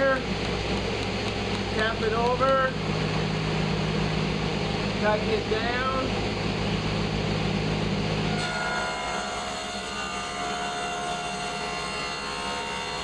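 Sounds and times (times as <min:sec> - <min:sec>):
dust collector running: 0:00.0 - 0:13.0
table saw running: 0:07.5 - 0:13.0.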